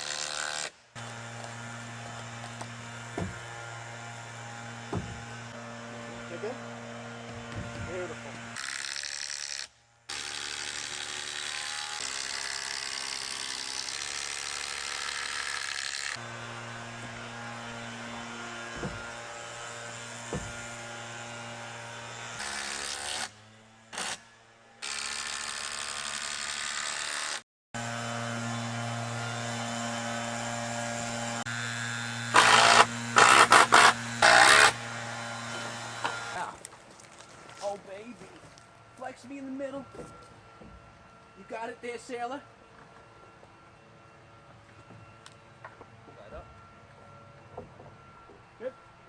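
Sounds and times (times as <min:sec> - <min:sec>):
loud sharp knocks: 0:04.9 - 0:05.2, 0:18.7 - 0:19.1, 0:20.3 - 0:20.6.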